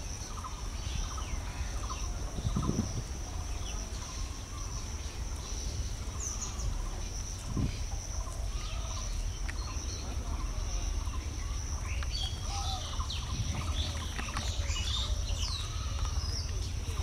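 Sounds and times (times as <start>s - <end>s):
animal calls: 12.2s - 17.0s.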